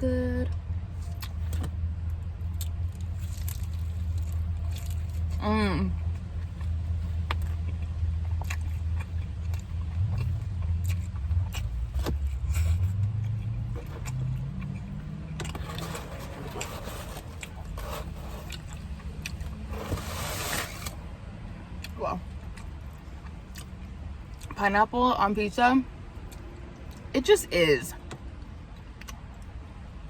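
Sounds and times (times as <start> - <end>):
vehicle engine rumble: 0.0 - 30.0
chewing: 6.0 - 20.9, 21.8 - 24.6.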